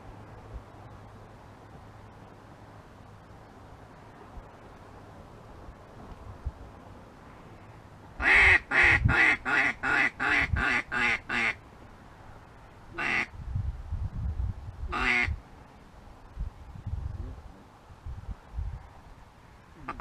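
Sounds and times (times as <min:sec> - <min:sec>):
duck call quacks: 0:08.2 - 0:11.6, 0:13.0 - 0:13.3, 0:14.9 - 0:15.4, 0:19.8 - 0:20.0.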